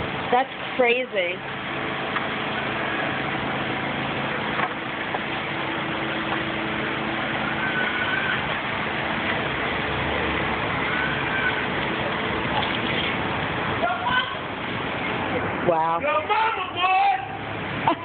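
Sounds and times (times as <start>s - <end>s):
road traffic noise: 0.0s - 18.0s
vehicle engine idling: 0.0s - 18.0s
faint high whistling glides: 7.4s - 8.5s.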